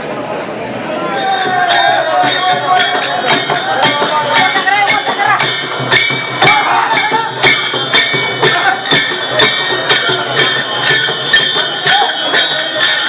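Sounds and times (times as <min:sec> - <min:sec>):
voices singing: 0:00.8 - 0:13.0
metal cymbals struck in a beat: 0:01.1 - 0:13.0.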